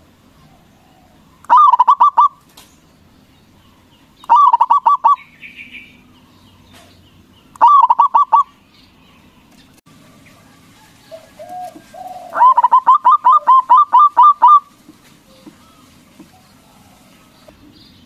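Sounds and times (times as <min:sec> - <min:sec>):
dove cooing: 0:00.3 - 0:02.4, 0:04.3 - 0:05.8, 0:07.6 - 0:08.5, 0:10.0 - 0:17.6.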